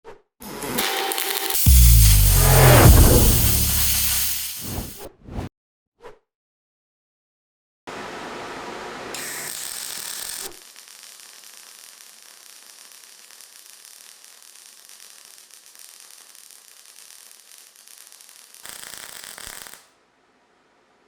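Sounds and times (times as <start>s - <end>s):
welding arc fizzing crackle: 0.8s - 5.0s, 9.2s - 19.8s.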